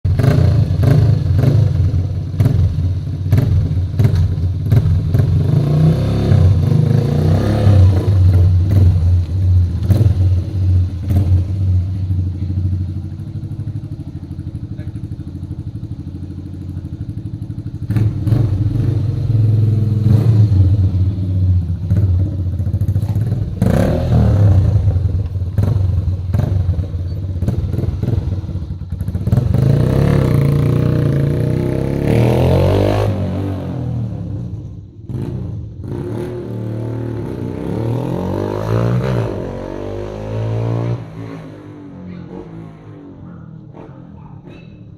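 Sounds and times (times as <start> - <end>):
motorcycle engine revving: 0.1 - 44.9.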